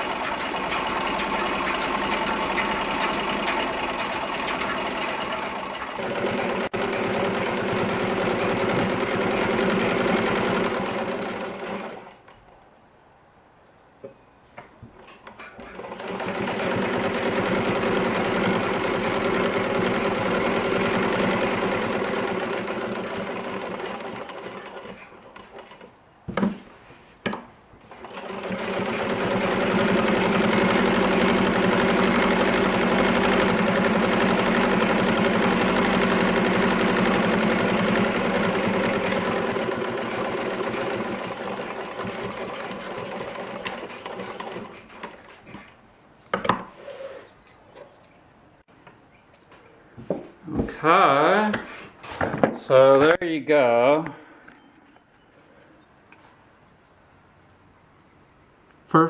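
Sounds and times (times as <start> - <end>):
sewing machine stitching: 0.0 - 12.2, 15.4 - 25.9, 27.9 - 45.7.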